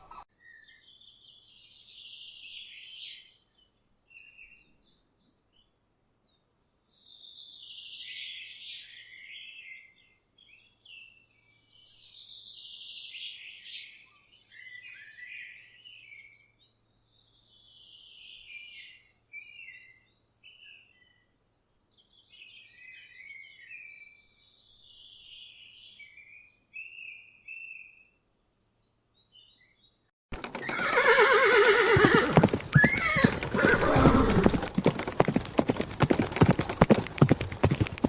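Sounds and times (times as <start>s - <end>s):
birds chirping faintly: 0.0s - 38.0s
hooves clip-clopping: 30.3s - 38.0s
horse whinnying loudly: 30.4s - 34.8s.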